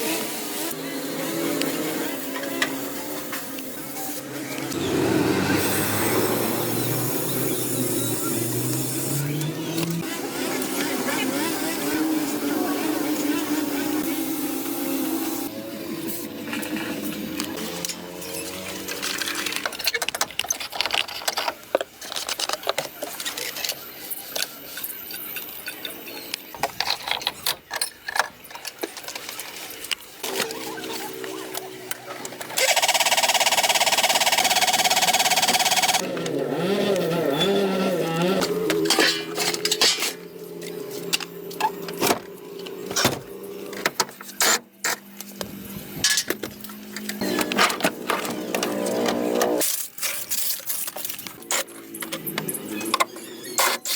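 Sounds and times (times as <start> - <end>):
hand tools clicking and knocking: 31.6 - 36.4, 38.2 - 45.0.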